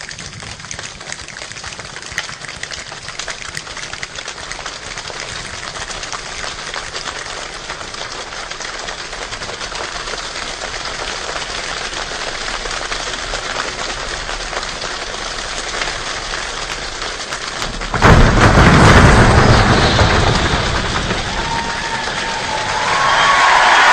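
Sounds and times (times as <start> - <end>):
rain pattering: 0.0 - 23.9
deep rumbling surge: 17.6 - 23.9.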